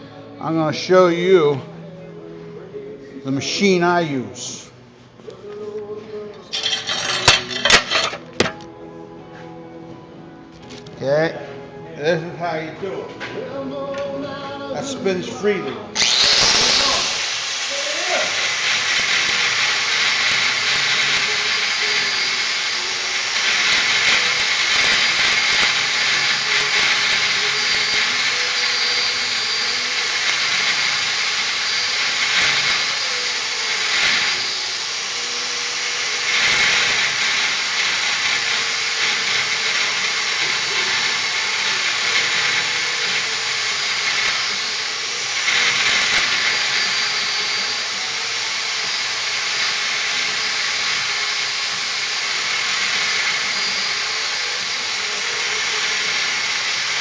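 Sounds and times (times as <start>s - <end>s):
power tool grinding metal: 6.5s - 8.6s, 14.9s - 57.0s.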